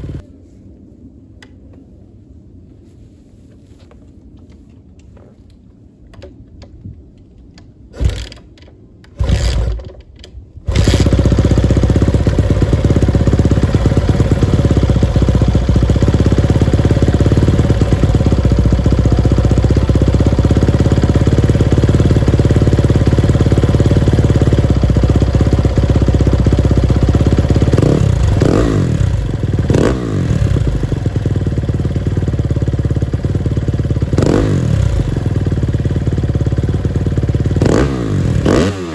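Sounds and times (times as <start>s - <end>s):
dirt bike engine idling: 0.0s - 0.2s, 10.7s - 38.9s
engine throttle blips: 10.6s - 31.3s.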